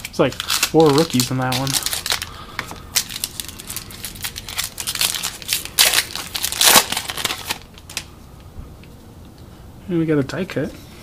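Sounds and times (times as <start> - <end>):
foil wrapper crinkling: 0.0 - 8.1.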